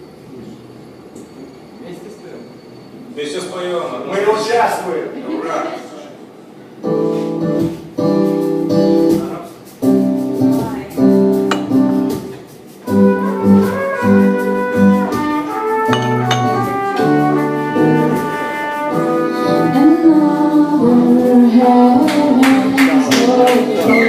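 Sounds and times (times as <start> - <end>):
live band playing: 6.9 - 24.0
brass melody over steady beat: 11.2 - 20.5.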